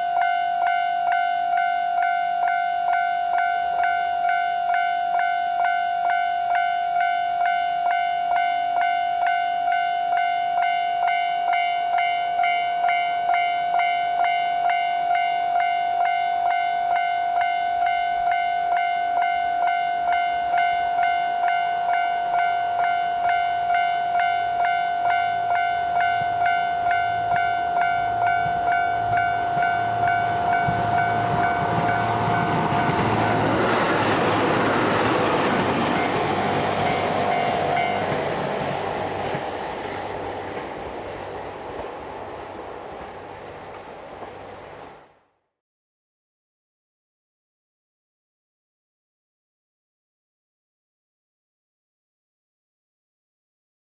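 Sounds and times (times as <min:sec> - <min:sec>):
level-crossing warning bell: 0:00.0 - 0:41.0
railcar rumbling: 0:00.0 - 0:45.3.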